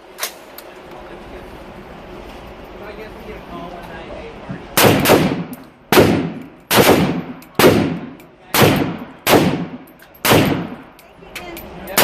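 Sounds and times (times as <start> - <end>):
suppressed rifle shots: 4.8 - 10.8.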